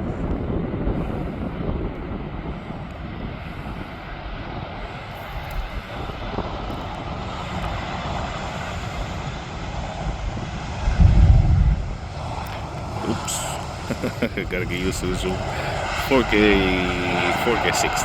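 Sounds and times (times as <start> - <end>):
jet engines roaring: 0.0 - 18.0
loud low rumble: 10.0 - 18.0.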